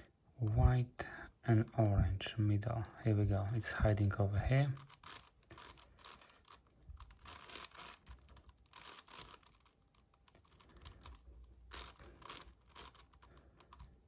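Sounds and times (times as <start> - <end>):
speed cube clicking: 4.7 - 14.0.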